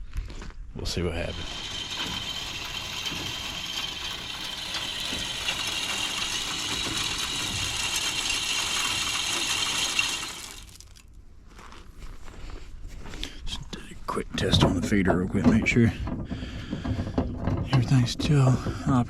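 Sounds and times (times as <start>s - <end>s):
motor whirring: 1.1s - 11.0s.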